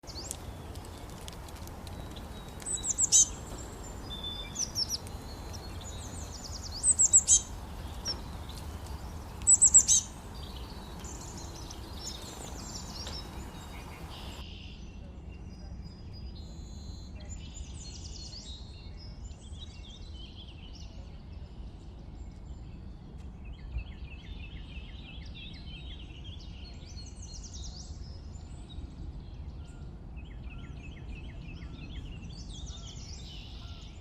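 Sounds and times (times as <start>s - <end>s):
low background rumble: 0.0s - 14.4s
songbirds singing trills: 0.0s - 34.0s.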